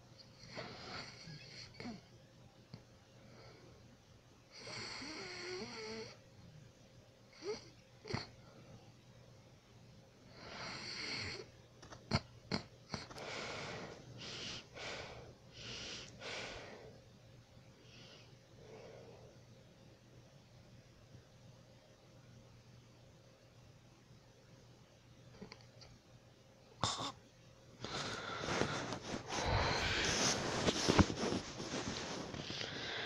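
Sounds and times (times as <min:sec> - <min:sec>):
person snoring: 0:27.8 - 0:33.0.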